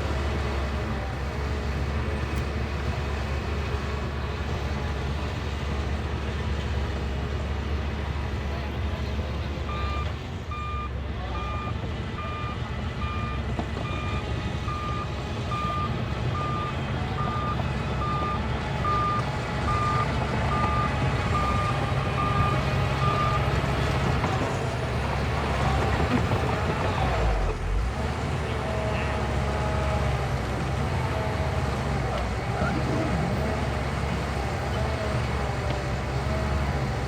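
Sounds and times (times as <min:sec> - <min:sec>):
diesel engine rumble: 0:00.0 - 0:37.0
reversing alarm beeping: 0:09.7 - 0:23.5.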